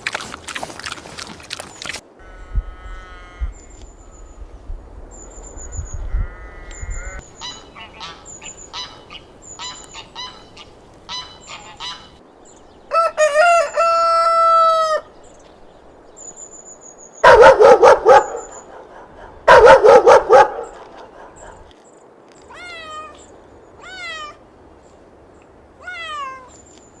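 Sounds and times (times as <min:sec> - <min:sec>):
rooster crowing: 0:12.9 - 0:15.1
dog barking: 0:17.2 - 0:21.7
cat meowing: 0:22.5 - 0:24.4, 0:25.8 - 0:26.6.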